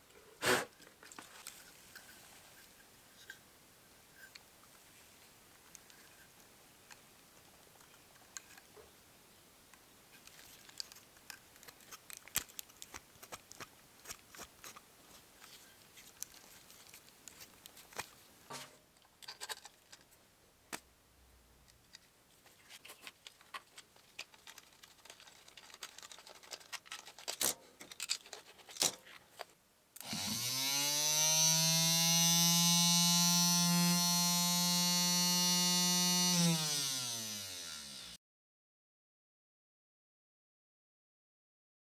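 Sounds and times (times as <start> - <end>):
small electric motor whining: 30.0 - 38.2.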